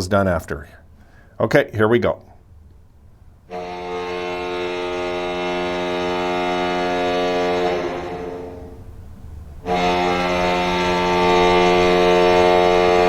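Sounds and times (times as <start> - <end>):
deep goal horn blast: 3.5 - 9.0, 9.6 - 13.0.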